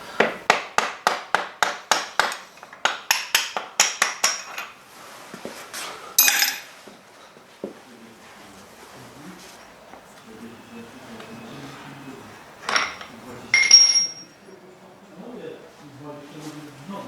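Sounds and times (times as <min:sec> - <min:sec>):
rapid hammer taps on metal: 0:00.2 - 0:04.8
loud ringing metal clink: 0:06.2 - 0:06.8, 0:12.6 - 0:14.5.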